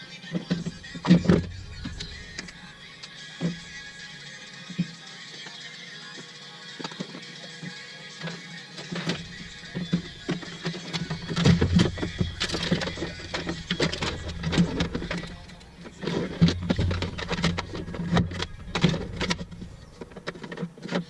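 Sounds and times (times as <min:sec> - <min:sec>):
low steady hum: 0:00.0 - 0:04.9, 0:08.2 - 0:21.0
small parts and tools clicking: 0:00.3 - 0:21.0.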